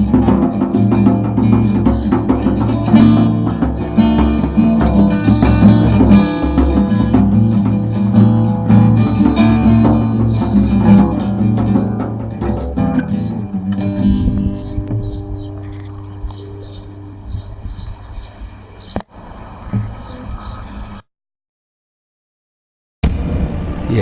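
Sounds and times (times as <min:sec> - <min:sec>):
guitar plucking and strumming: 0:00.0 - 0:19.0.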